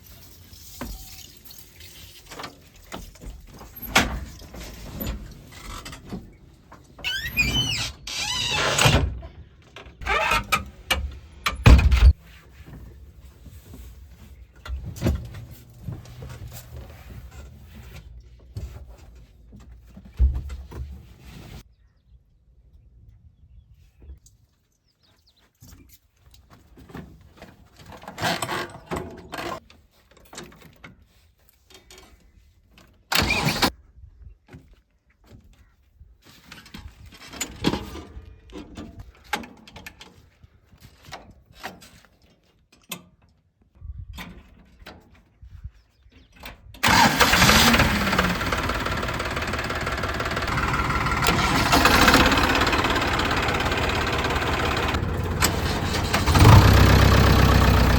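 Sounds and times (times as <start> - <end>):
diesel engine starting and running: 10.0 - 12.2, 46.8 - 57.9
clattering and knocks: 46.9 - 57.9.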